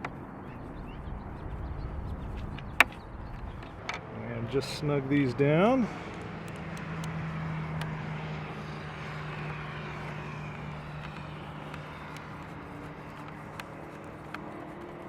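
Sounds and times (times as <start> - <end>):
distant engine passing by: 0.0 - 15.0
faint clicks: 6.0 - 8.0.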